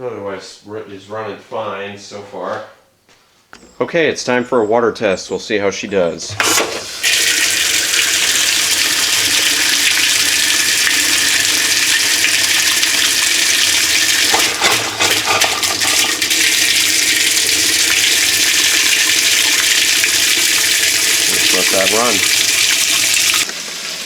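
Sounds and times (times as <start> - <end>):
water rushing into washer tub: 6.3 - 24.0.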